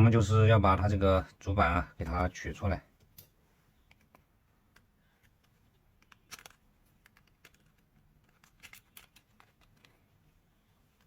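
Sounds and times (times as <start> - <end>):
plastic housing clicks and scrapes: 4.8 - 9.9.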